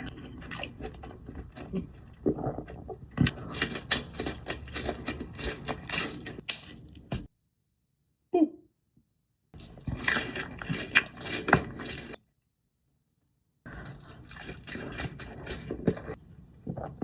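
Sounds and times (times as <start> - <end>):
chewing and crunching: 0.0 - 7.1, 9.6 - 12.2, 13.7 - 17.0.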